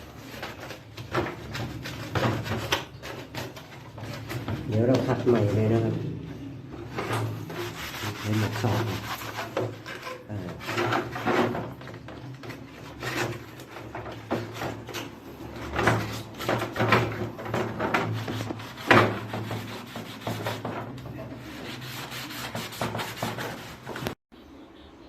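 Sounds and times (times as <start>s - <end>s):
hand scrubbing strokes: 7.2s - 24.2s.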